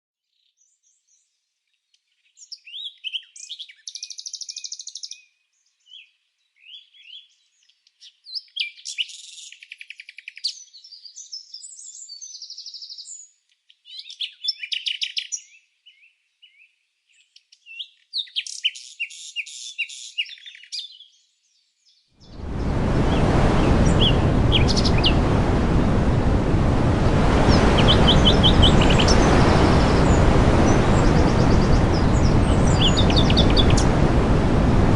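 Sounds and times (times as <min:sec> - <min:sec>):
songbird chirping and trilling: 0:00.3 - 0:22.5, 0:27.6 - 0:33.9
steady rushing noise: 0:22.3 - 0:34.9.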